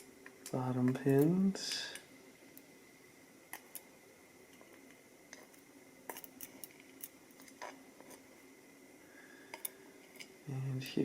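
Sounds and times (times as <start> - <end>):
small metal parts clicking: 6.1 - 7.6, 9.5 - 10.3.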